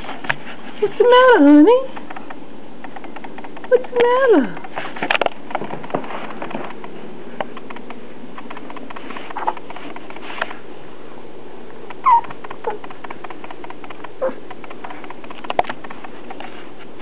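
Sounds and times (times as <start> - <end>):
dog whimpering: 12.0 - 12.8, 14.2 - 14.4.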